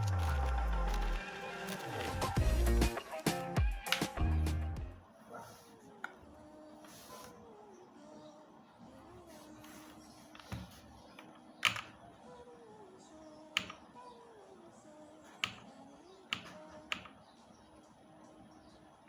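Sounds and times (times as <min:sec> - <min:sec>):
soft background music: 0:00.0 - 0:19.0
keyboard plastic clicks: 0:10.4 - 0:12.0.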